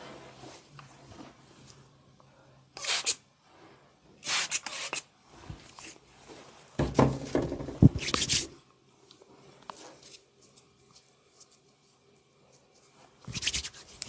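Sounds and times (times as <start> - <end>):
hands rubbing skin and clothing: 7.8 - 8.6, 9.6 - 14.0.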